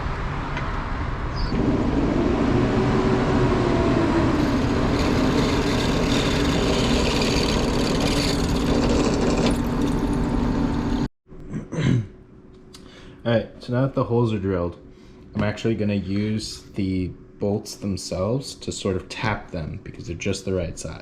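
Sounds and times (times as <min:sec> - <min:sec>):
drill press motor hum: 0:01.6 - 0:11.1.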